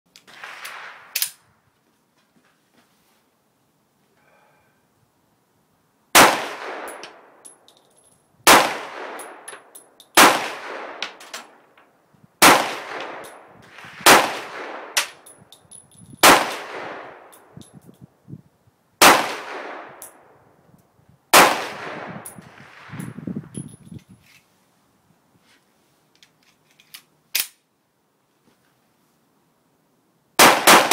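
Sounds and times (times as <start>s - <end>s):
pistol gunshots echoing: 6.2s - 7.1s, 8.5s - 9.5s, 12.4s - 13.4s, 14.0s - 15.2s
light metallic clinks: 6.9s - 8.4s, 15.2s - 16.2s, 17.3s - 18.1s, 23.0s - 24.4s.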